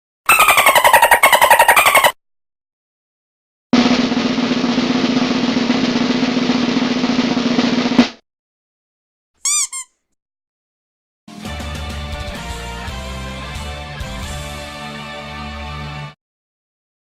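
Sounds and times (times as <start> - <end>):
snare drum roll: 3.8 - 8.2.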